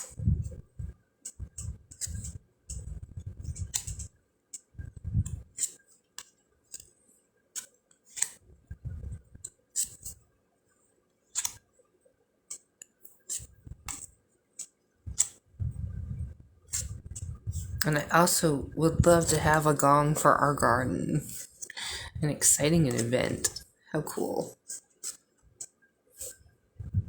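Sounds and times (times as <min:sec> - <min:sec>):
cards snapping and clicking: 0:07.6 - 0:08.4, 0:11.3 - 0:11.6.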